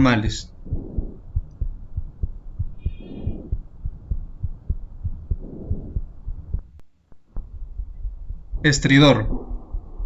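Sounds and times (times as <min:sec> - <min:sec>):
heartbeat thumps: 0:00.0 - 0:10.0
breath sounds through stethoscope: 0:00.6 - 0:01.7, 0:02.7 - 0:06.6.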